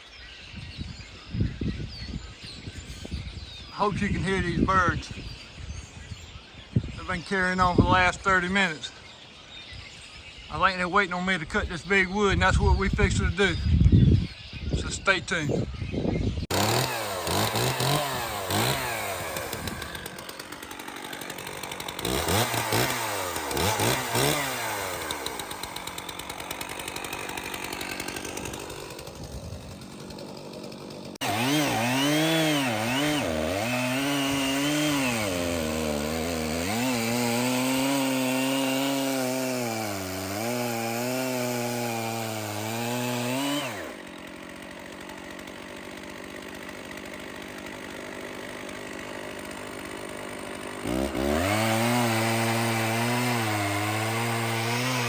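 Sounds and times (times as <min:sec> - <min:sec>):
chainsaw revving and cutting log: 0:15.3 - 0:55.0.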